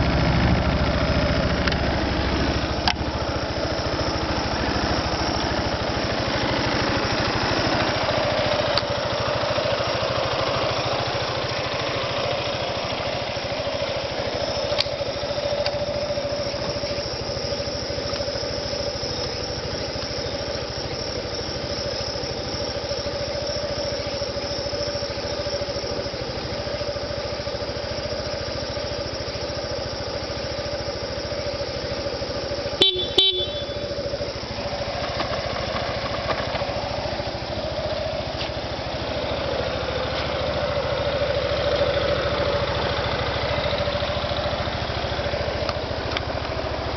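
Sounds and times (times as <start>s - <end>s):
scooter engine idling: 0.0s - 46.9s
horn beeps: 32.8s - 34.0s.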